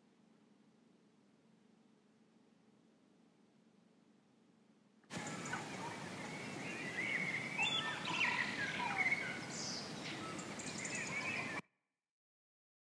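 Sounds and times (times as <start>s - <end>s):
background hiss: 0.0s - 11.6s
small birds chirping: 5.1s - 11.6s.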